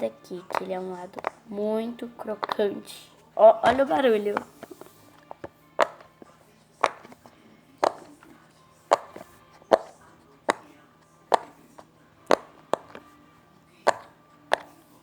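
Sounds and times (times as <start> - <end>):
fidget toy bubbles popping: 13.9 - 14.7.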